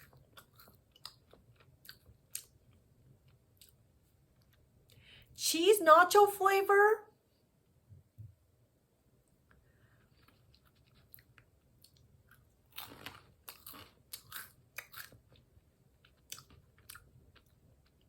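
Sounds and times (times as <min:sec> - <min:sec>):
person chewing crunchy snack: 0:00.0 - 0:03.8, 0:09.9 - 0:18.0.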